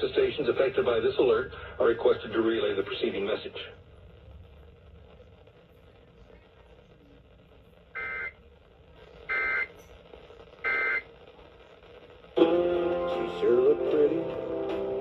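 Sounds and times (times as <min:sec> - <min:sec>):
music with guitar: 0:12.4 - 0:15.0.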